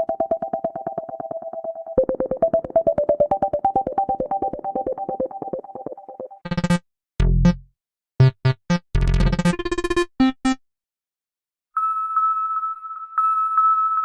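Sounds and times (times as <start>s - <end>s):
chime: 11.8s - 14.0s.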